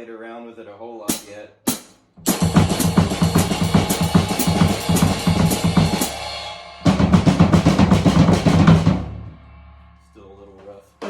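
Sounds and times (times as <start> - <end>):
drum kit playing: 1.1 - 9.4.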